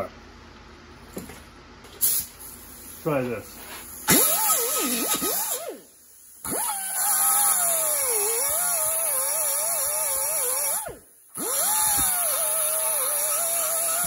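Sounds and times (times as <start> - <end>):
steady high hiss: 1.9 - 6.5
power tool cutting sheet metal: 4.1 - 5.8, 6.4 - 14.0.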